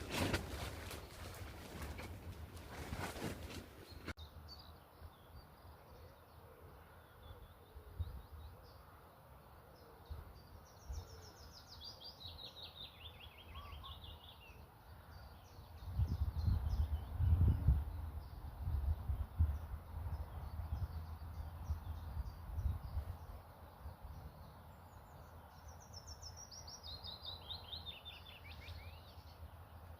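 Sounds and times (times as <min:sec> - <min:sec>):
songbirds chirping: 0:00.0 - 0:29.9
wind buffeting microphone: 0:15.8 - 0:23.4.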